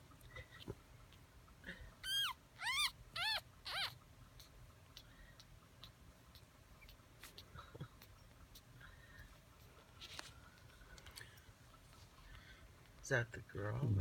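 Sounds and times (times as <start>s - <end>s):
puppy squealing: 2.0s - 4.5s.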